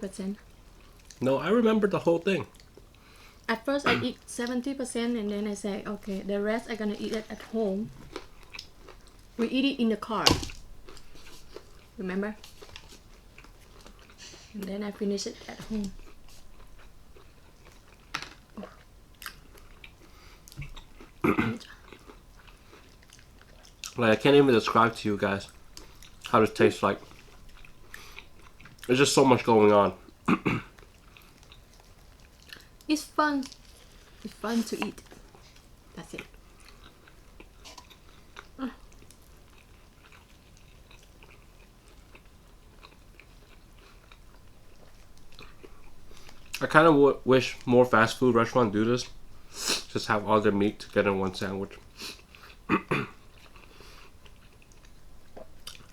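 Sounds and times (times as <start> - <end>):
chewing and biting a sandwich: 6.1 - 9.4, 10.3 - 14.6, 15.7 - 46.7, 50.8 - 55.9.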